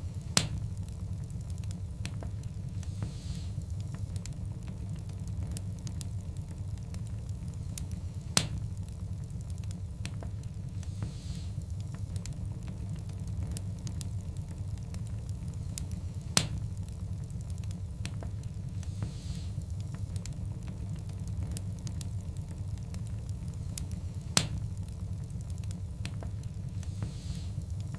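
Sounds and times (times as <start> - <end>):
fire crackling: 0.0 - 27.9
fire hissing: 0.0 - 27.9
wood fire rumble: 0.0 - 27.9
sharp pops of burning logs: 0.2 - 27.9.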